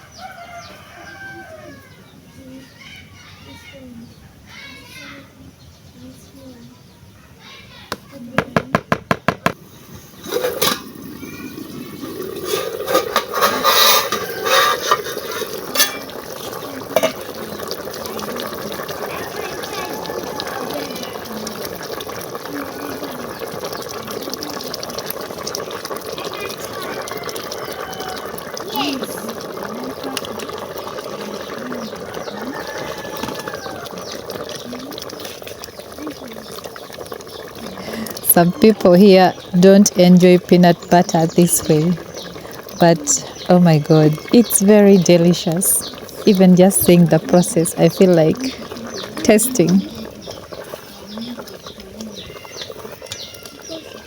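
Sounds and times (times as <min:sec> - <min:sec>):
stew bubbling in a pot: 0:08.1 - 0:54.0
spoon stirring in a pot: 0:12.4 - 0:17.7.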